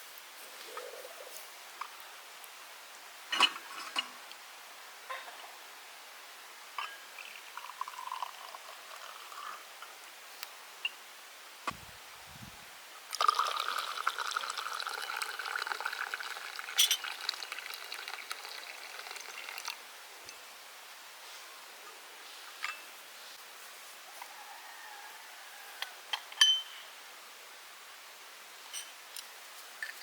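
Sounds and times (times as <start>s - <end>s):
liquid pouring into glass: 7.2s - 9.6s, 13.1s - 19.8s.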